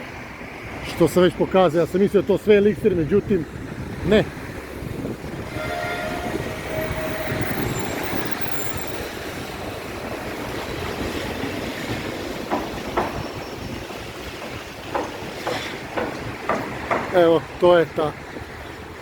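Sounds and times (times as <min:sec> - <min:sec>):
passing vehicle rumble: 0:00.0 - 0:13.0
thin squealing tones: 0:05.4 - 0:09.8.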